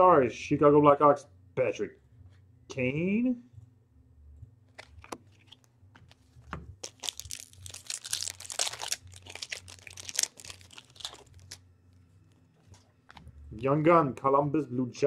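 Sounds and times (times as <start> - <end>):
wrapper tearing and crinkling: 4.8 - 11.6.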